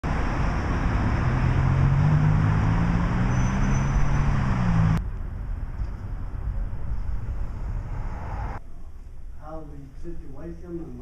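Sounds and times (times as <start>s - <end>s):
road traffic noise: 0.0s - 8.6s
vehicle engine humming: 0.0s - 8.6s.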